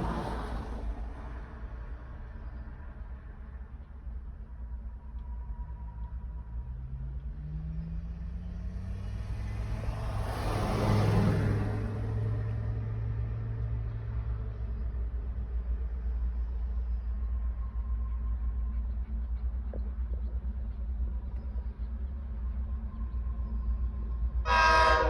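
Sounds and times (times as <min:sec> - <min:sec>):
vehicle engine accelerating: 0:00.0 - 0:01.0, 0:06.4 - 0:15.9
steady low rumble: 0:00.0 - 0:08.6, 0:12.5 - 0:24.9.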